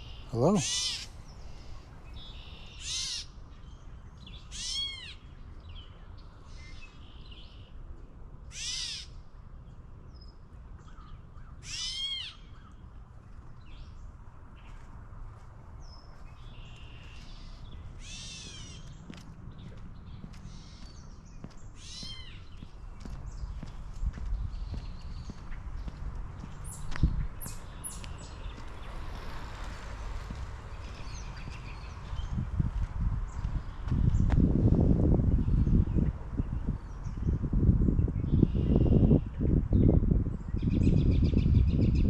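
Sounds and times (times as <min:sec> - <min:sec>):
bird harsh calls: 0:00.0 - 0:03.4, 0:16.4 - 0:19.1, 0:21.8 - 0:22.6.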